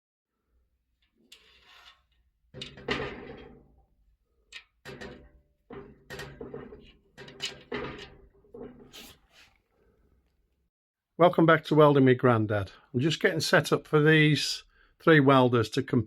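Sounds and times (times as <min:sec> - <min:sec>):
irregular knocks and clunks: 0:02.5 - 0:03.9, 0:04.5 - 0:09.2.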